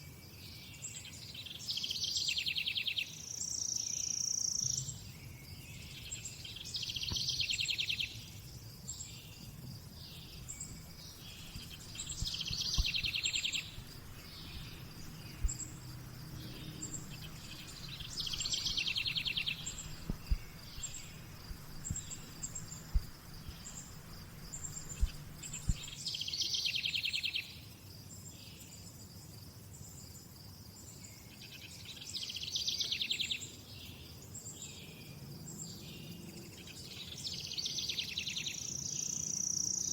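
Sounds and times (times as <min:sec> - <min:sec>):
insect chirring: 0:03.3 - 0:27.4
low background hum: 0:08.4 - 0:26.0
songbird trilling: 0:10.2 - 0:27.4.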